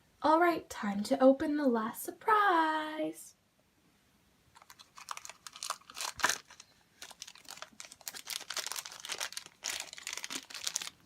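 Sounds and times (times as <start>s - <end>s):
plastic wrapper crackling: 4.5s - 11.0s.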